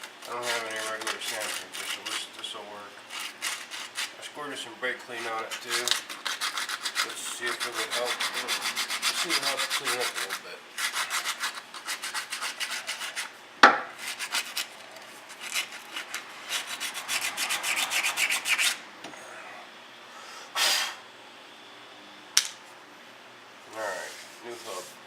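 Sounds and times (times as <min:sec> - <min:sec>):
sanding disc scrubbing metal: 0:00.3 - 0:02.2, 0:03.1 - 0:04.2, 0:05.2 - 0:13.3, 0:14.0 - 0:14.7, 0:15.3 - 0:18.8.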